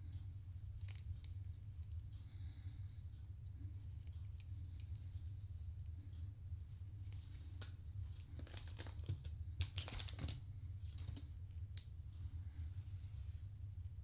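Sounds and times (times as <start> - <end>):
steady low hum: 0.0 - 14.0
knitting needles clicking: 0.7 - 2.1.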